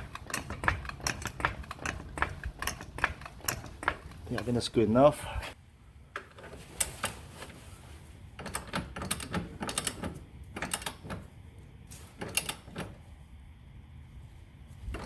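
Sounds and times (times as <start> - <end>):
ratchet wrench clicking: 0.0 - 4.5.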